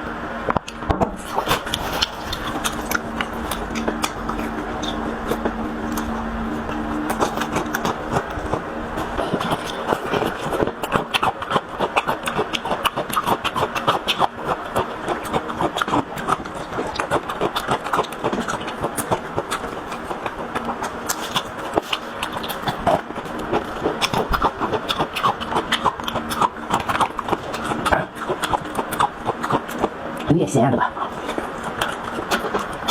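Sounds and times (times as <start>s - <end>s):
chewing and lip-smacking: 0.0s - 32.9s.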